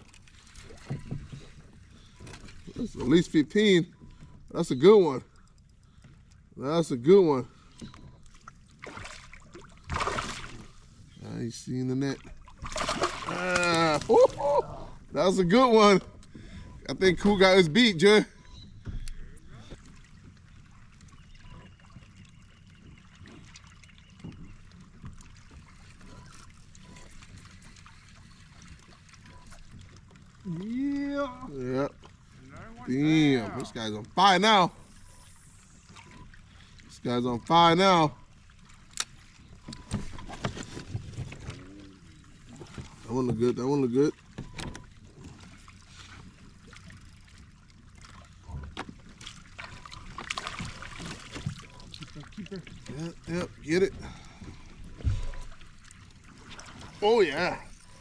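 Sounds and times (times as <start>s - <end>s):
faint water lapping: 0.0s - 58.0s
water splashing and dripping: 7.9s - 10.8s, 12.2s - 14.9s, 41.2s - 54.4s
dull thump: 54.9s - 55.5s.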